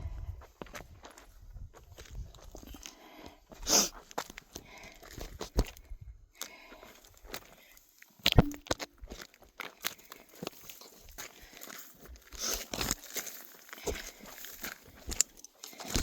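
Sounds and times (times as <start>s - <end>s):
footsteps crunching on gravel: 8.4s - 16.0s.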